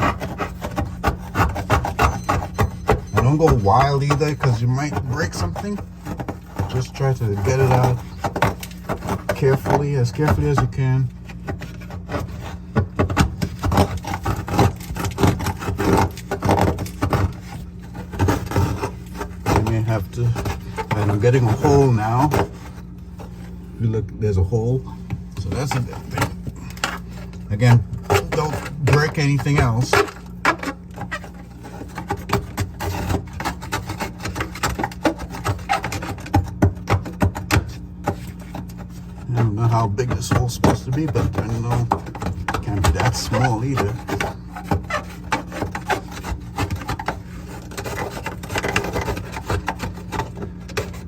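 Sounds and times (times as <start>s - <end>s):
steady low hum: 0.0s - 51.0s
tool scraping and chipping ice: 0.0s - 51.0s.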